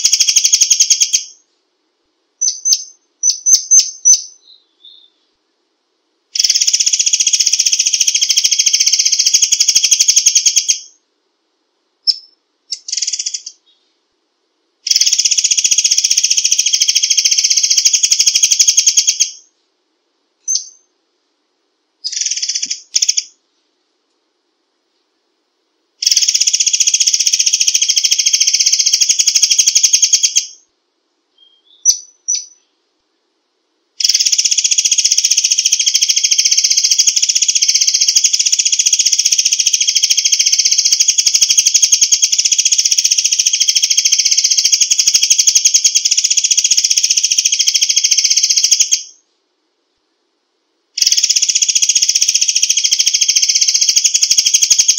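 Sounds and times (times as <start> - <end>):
bird chirping and trilling: 0.0 - 1.4, 2.4 - 5.3, 6.4 - 11.0, 12.0 - 13.9, 14.9 - 19.5, 20.4 - 20.9, 22.0 - 23.4, 26.0 - 30.6, 31.4 - 32.8, 34.0 - 49.2, 51.0 - 54.9.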